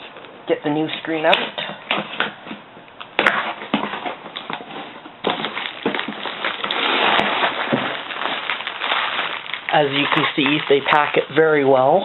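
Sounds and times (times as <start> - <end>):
box and wrapping rustling: 3.2 - 11.7.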